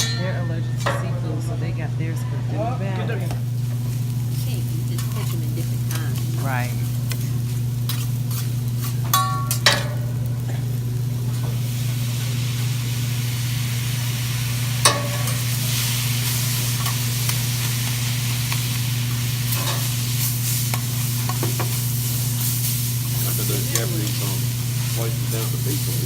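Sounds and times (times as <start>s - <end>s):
steady low hum: 0.0s - 26.0s
food sizzling on a griddle: 2.6s - 26.0s
metal spatula clinking: 7.9s - 10.1s.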